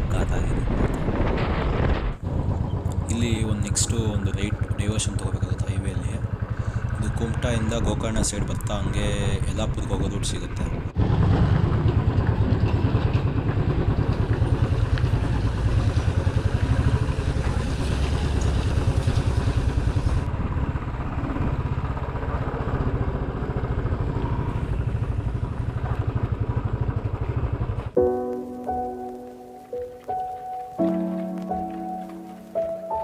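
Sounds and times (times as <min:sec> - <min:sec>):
motorcycle engine running: 0:00.2 - 0:32.7
music: 0:28.0 - 0:33.0.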